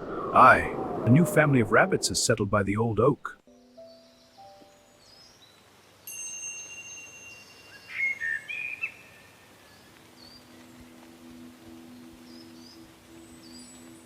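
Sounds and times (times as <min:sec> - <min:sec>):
low held tone: 0:00.0 - 0:02.9.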